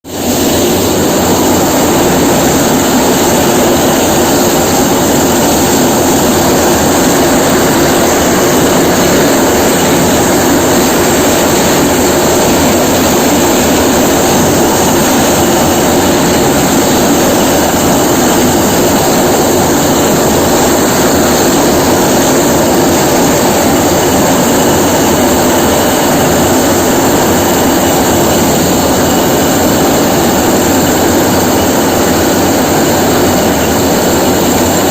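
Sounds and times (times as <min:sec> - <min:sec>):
cutting machine mechanical drone: 0:00.1 - 0:34.9.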